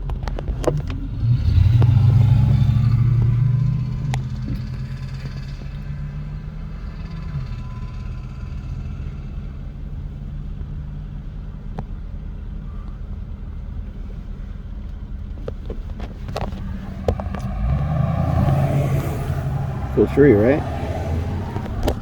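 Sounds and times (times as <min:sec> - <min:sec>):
car road and engine rumble: 0:00.0 - 0:22.0.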